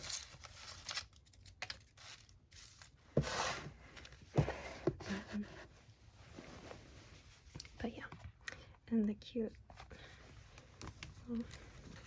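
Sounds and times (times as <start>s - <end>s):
paper packaging rustling: 0.0s - 4.2s.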